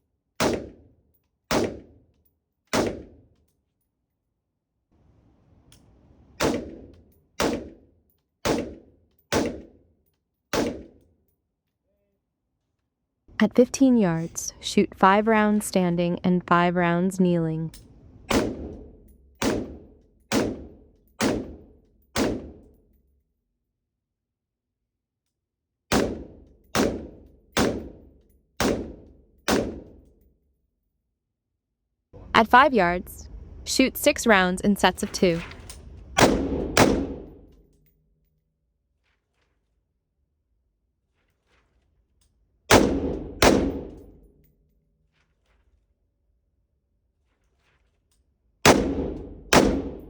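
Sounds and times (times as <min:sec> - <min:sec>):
rifle shots with echo: 0:06.4 - 0:07.8, 0:18.3 - 0:21.6, 0:26.8 - 0:28.0, 0:28.6 - 0:29.9, 0:36.2 - 0:37.4, 0:42.7 - 0:44.1, 0:48.7 - 0:50.0.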